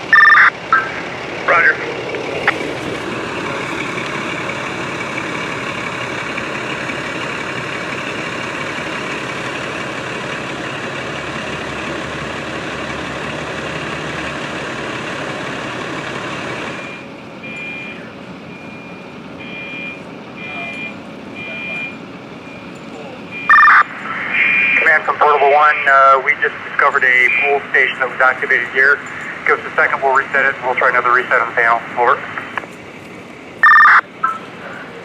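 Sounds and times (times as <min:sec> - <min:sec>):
short beeps: 0:00.1 - 0:00.9, 0:16.8 - 0:24.9, 0:33.6 - 0:34.5
radio static hiss: 0:23.6 - 0:32.7.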